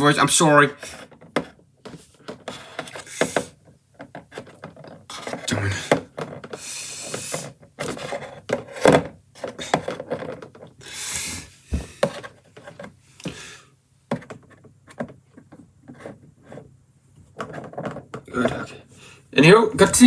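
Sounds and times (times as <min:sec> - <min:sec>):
toy figures clicking and knocking: 0:01.0 - 0:10.8, 0:14.1 - 0:16.6.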